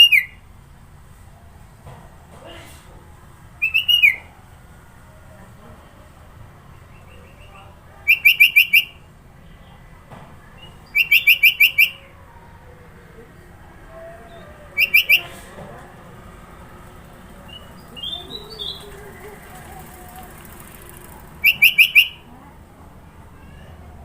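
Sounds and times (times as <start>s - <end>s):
bird singing rapid notes: 3.6s - 4.2s, 6.8s - 9.0s, 10.6s - 12.0s, 14.8s - 15.3s, 17.5s - 19.0s, 21.4s - 22.3s
soft bird chirps: 10.5s - 12.0s, 21.4s - 22.2s.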